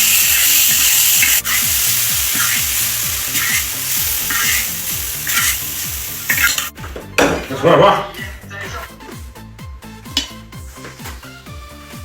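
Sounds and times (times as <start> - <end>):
food sizzling in hot oil: 0.0 - 6.7
spatula scraping a pan: 0.0 - 6.7
background music with a beat: 8.3 - 12.0.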